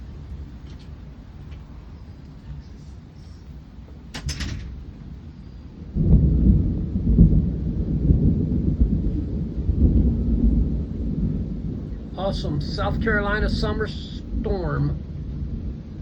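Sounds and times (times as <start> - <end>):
thunder rumbling: 0.0 - 16.0
sharp rattle: 4.1 - 4.9.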